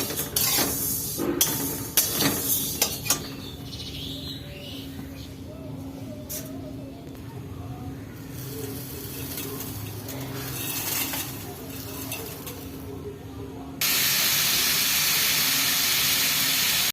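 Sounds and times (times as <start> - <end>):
faint sizzling: 8.1 - 13.0
loud even hiss: 13.8 - 16.9.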